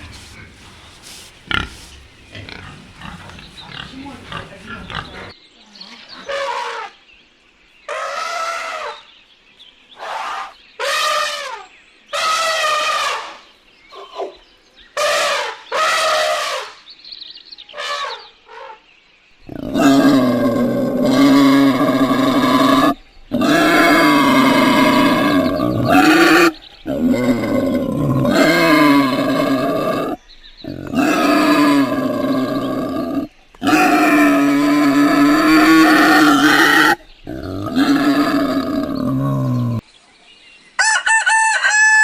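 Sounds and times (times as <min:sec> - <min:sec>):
short animal calls: 0:00.0 - 0:05.3
continuous animal call: 0:00.0 - 0:42.0.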